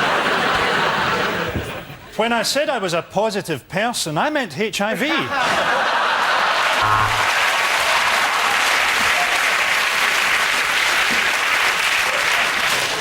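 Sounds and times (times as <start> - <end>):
studio audience applauding: 6.1 - 13.0.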